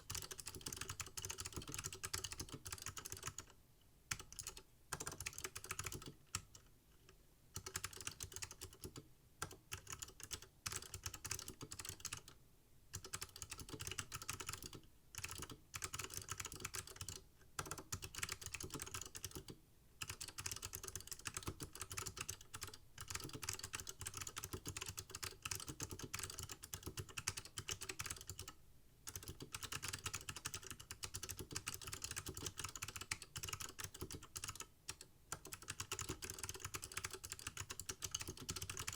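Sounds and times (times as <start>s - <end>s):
keyboard typing: 0.0s - 3.5s, 4.1s - 6.6s, 7.6s - 12.3s, 12.9s - 28.5s, 29.1s - 38.9s.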